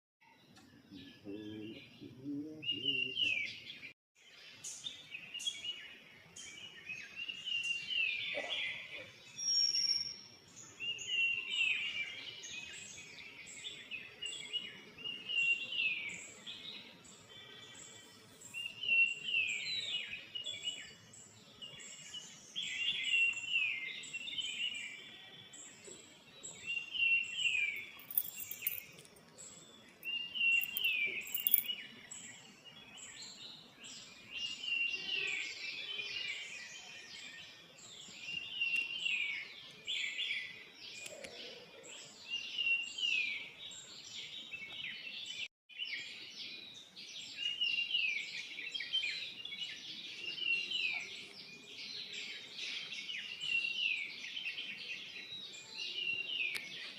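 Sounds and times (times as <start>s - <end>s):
birds chirping: 0.2s - 56.9s.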